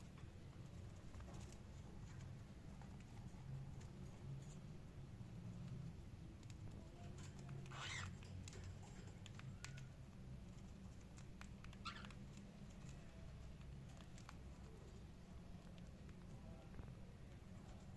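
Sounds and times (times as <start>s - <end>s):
cockatiel chirps: 11.7s - 12.2s.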